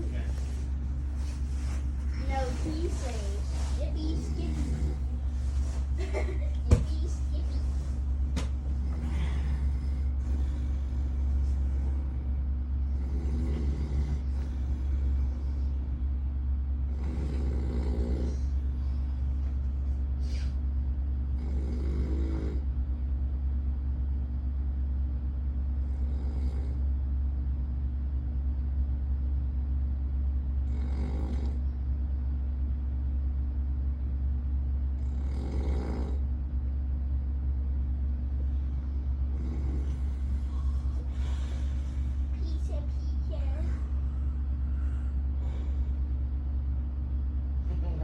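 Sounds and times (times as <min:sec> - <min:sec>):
steady low hum: 0:00.0 - 0:48.0
man snoring: 0:12.8 - 0:15.0, 0:16.9 - 0:18.6, 0:21.3 - 0:22.7, 0:25.9 - 0:26.8, 0:30.6 - 0:31.6, 0:35.0 - 0:36.3, 0:39.3 - 0:40.6.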